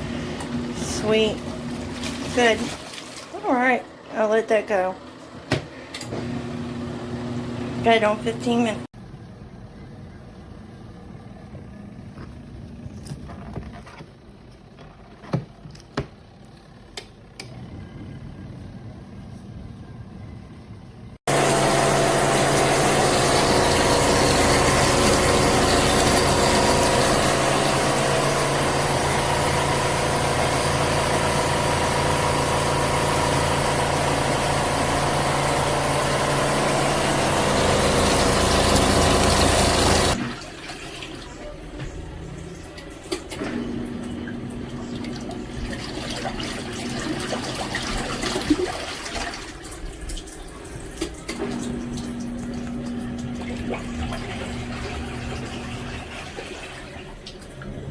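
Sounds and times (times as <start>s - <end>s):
water churning: 0.0s - 3.9s, 21.3s - 41.7s, 42.5s - 57.9s
washing machine motor hum: 0.0s - 57.9s.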